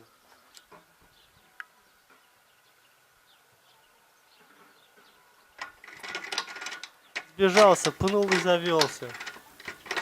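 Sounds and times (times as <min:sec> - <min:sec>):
faint bird chirps: 0:00.0 - 0:05.6
motorcycle kick-starter clicking: 0:05.6 - 0:10.0.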